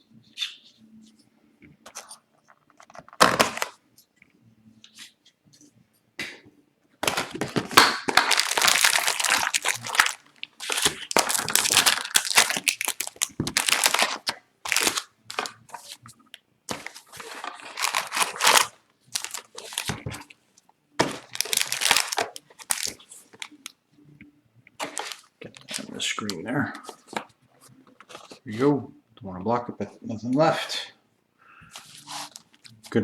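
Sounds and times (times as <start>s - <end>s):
packaging tearing and crinkling: 3.2s - 3.7s, 7.1s - 16.0s, 16.7s - 20.2s, 21.0s - 23.6s, 24.8s - 26.0s.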